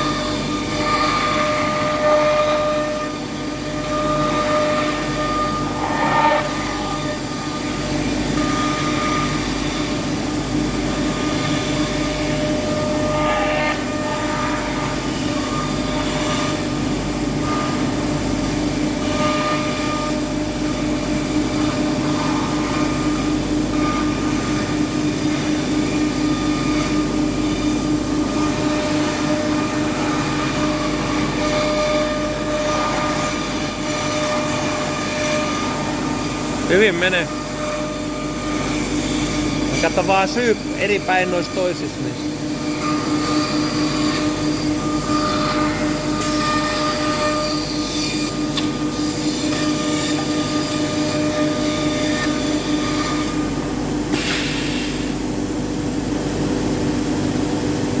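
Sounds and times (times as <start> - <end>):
cutter milling wood: 18.9 - 53.6
router spindle whining: 25.8 - 53.7.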